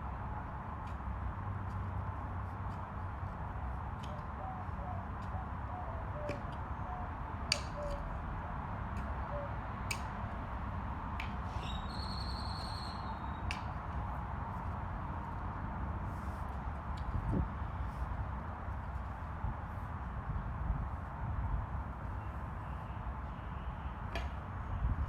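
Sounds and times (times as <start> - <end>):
outdoor background rumble: 0.0 - 25.0
buzzy high bird call: 11.5 - 13.4.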